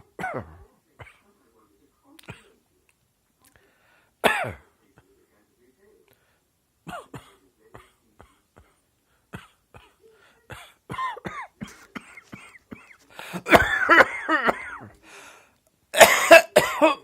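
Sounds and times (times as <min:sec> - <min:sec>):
person coughing: 0:00.2 - 0:01.2, 0:04.2 - 0:04.6, 0:09.4 - 0:14.9, 0:16.0 - 0:17.0.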